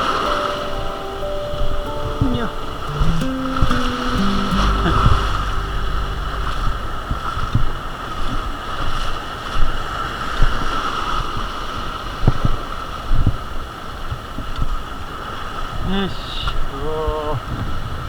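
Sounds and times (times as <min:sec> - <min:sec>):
water noise: 0:00.0 - 0:11.0
wind: 0:00.0 - 0:18.0
boat engine drone with whine: 0:04.6 - 0:08.4.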